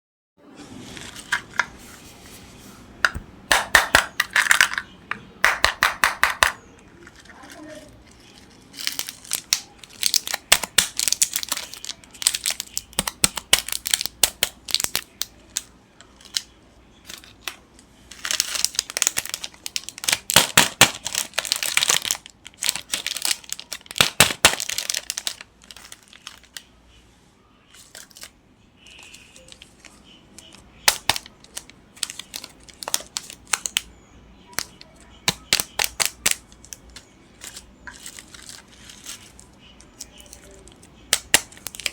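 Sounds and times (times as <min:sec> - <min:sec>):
candy wrappers crinkling: 0:00.7 - 0:01.8, 0:03.5 - 0:26.8, 0:27.7 - 0:41.9.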